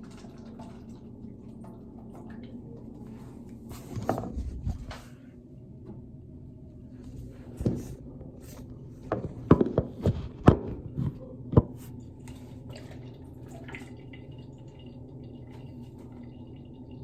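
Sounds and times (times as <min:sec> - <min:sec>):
liquid dripping: 0:00.0 - 0:03.9, 0:10.8 - 0:17.0
steady low hum: 0:00.0 - 0:17.0.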